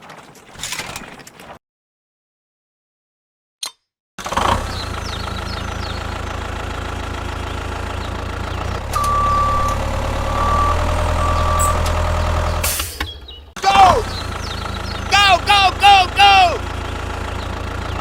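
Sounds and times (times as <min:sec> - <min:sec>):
heavy vehicle engine running: 0:04.2 - 0:18.0
high steady beep: 0:09.0 - 0:11.9.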